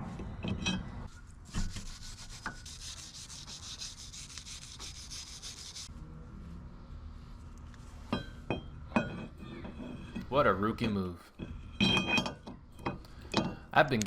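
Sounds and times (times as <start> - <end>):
fast scraping strokes: 1.1 - 5.9.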